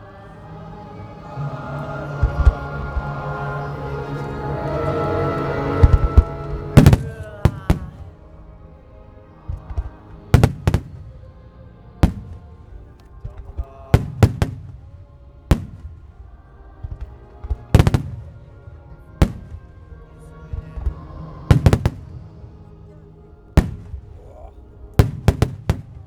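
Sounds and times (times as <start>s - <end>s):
music playing: 0.0s - 26.0s
firework shells bursting: 9.6s - 11.1s, 13.2s - 14.9s, 25.0s - 26.0s.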